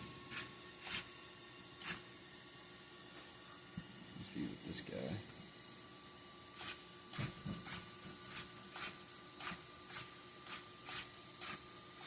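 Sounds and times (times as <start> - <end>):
servos whirring in bursts: 6.5 - 12.0.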